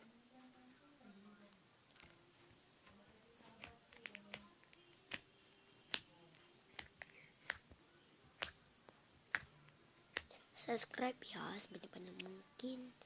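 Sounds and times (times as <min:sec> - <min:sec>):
slime clicking and popping: 0:09.3 - 0:10.3.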